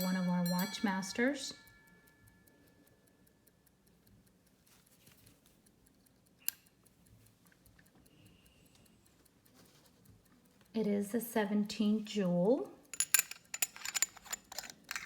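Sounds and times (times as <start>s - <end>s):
repeater chime ringing: 0.0s - 2.4s
pocket watch ticking: 0.0s - 15.0s.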